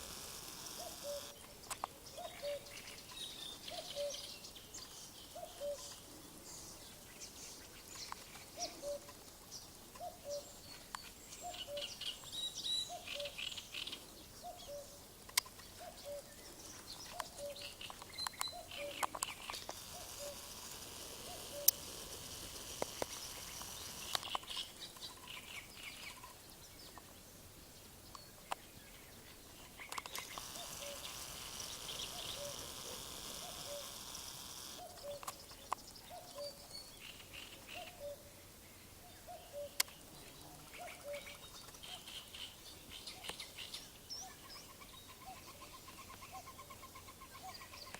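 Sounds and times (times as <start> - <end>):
high steady trilling: 0.0 - 1.4, 19.6 - 24.5, 30.1 - 35.0
birds singing and chirping: 0.6 - 47.9.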